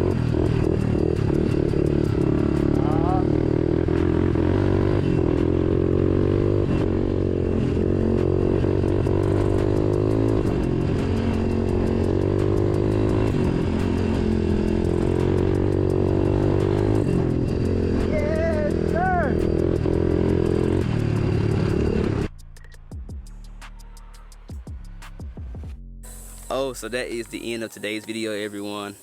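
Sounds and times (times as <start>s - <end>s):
dirt bike engine revving: 0.0s - 22.3s.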